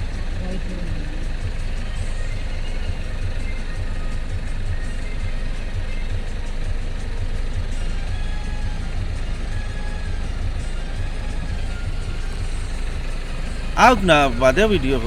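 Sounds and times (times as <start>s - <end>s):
low vehicle engine rumble: 0.0s - 15.0s.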